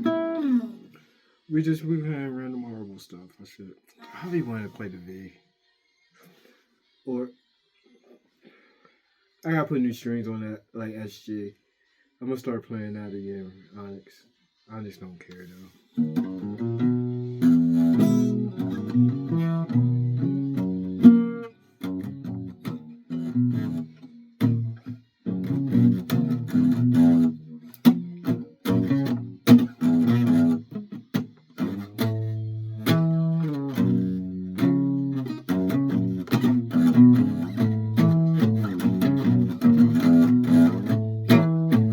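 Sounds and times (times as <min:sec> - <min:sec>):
solo guitar picking: 0:00.0 - 0:00.8, 0:16.0 - 0:41.9.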